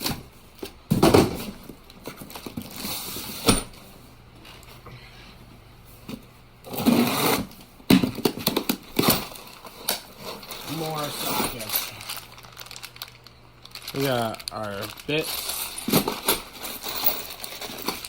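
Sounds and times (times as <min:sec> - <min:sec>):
packaging rustling: 0:08.0 - 0:18.0
metal tools clinking: 0:09.1 - 0:12.4, 0:13.9 - 0:18.0.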